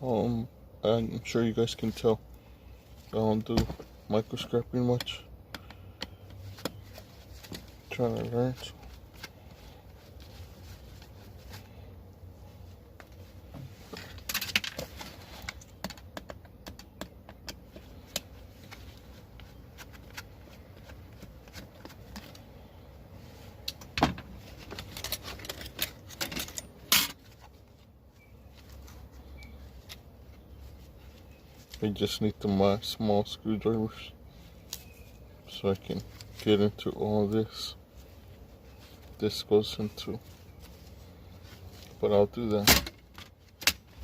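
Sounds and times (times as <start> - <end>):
metal parts clinking and rattling: 24.6 - 27.2.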